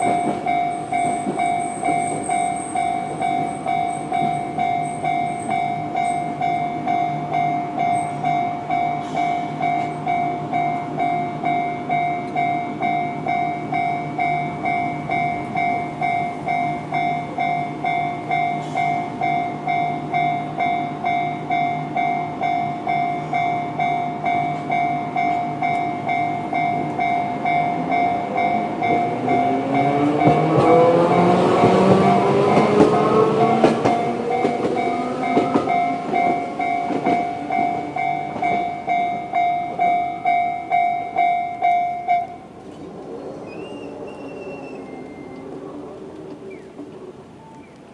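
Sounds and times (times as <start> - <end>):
electronic level crossing bell: 0.0 - 9.0, 34.0 - 42.4
tram whine: 0.0 - 47.9.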